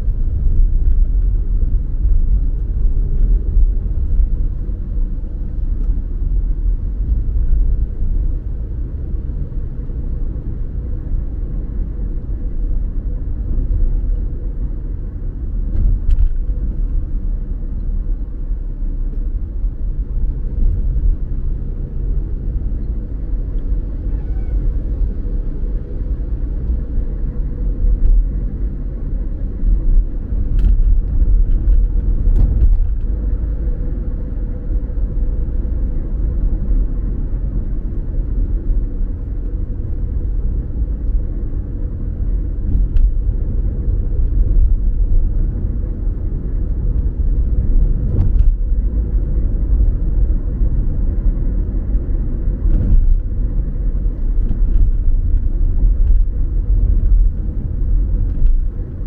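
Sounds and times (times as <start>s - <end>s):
car road and engine rumble: 0.0s - 59.0s.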